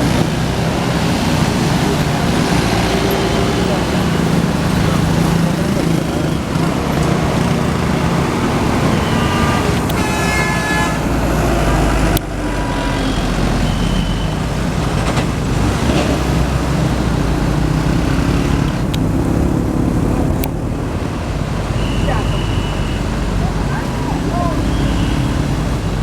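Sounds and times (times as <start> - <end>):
engine and road noise: 0.0 - 26.0
multi-tone bus air horn: 8.8 - 14.4, 23.9 - 25.6.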